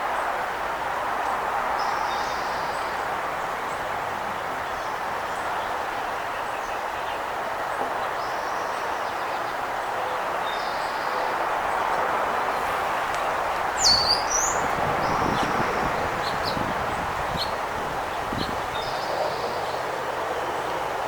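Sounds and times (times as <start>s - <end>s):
songbirds calling: 1.8s - 21.0s
wind rushing: 12.2s - 18.9s.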